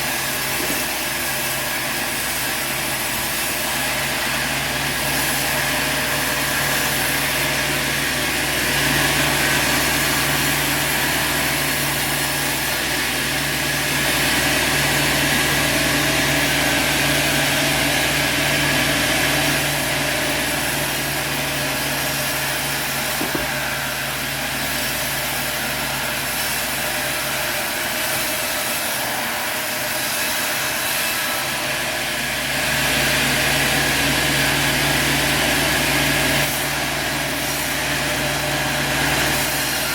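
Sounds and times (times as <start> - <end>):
saw cutting through log: 0.0 - 39.9.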